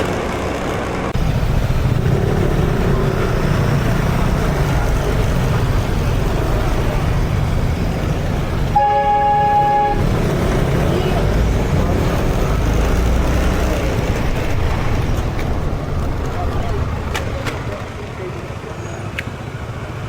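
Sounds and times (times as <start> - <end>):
street traffic rumble: 0.0 - 20.0
vehicle horn honk: 8.8 - 10.2.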